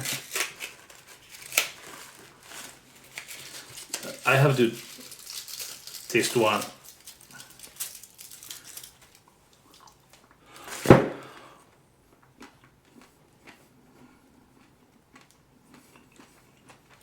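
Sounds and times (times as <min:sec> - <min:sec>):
wrapper crinkling: 0:00.0 - 0:10.9
loud sudden thump: 0:10.8 - 0:11.2.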